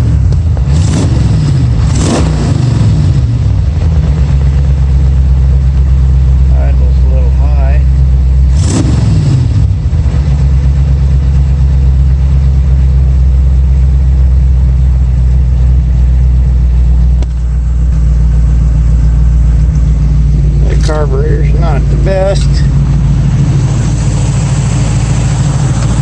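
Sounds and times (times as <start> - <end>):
car engine idling: 0.0 - 26.0
noise burst with falling tone: 18.1 - 26.0.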